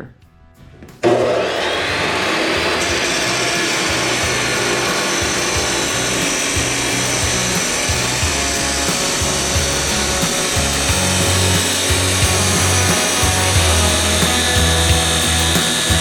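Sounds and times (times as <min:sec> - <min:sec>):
background music with low beat: 0:00.0 - 0:16.0.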